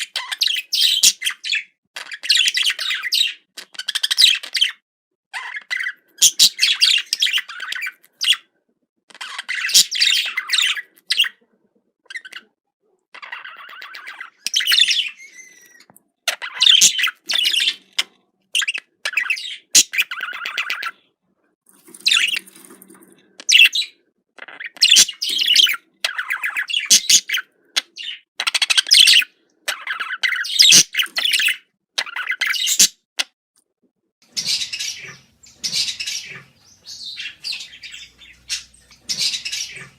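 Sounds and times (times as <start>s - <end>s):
budgerigar chattering and warbling: 9.2s - 11.4s, 13.2s - 21.0s, 23.5s - 33.3s, 34.2s - 39.9s.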